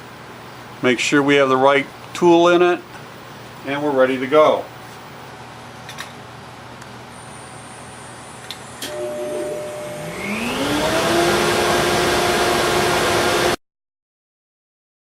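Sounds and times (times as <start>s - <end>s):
vacuum rushing noise: 7.9s - 13.6s
router spindle motor whining: 8.8s - 13.5s.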